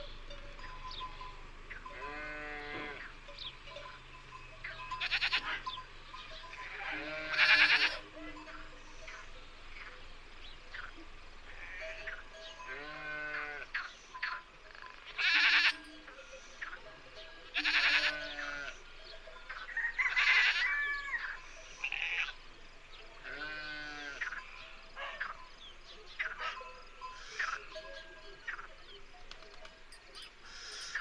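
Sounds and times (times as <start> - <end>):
livestock bleating: 1.7 - 3.2, 4.6 - 5.8, 6.4 - 9.3, 11.5 - 18.8, 19.4 - 22.4, 23.2 - 25.5, 26.2 - 28.7, 30.0 - 31.0
faint chirps: 22.9 - 31.0.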